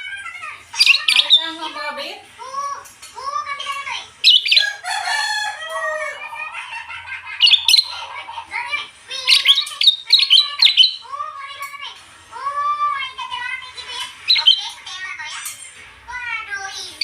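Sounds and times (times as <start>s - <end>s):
bird whistled song: 9.3s - 11.0s, 14.3s - 14.8s.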